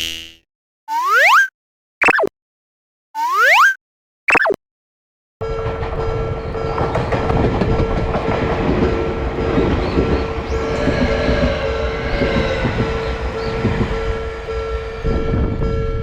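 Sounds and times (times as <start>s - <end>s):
cartoon sound effect falling in pitch: 0.9s - 2.3s, 3.2s - 4.6s
train rumbling: 5.4s - 16.0s.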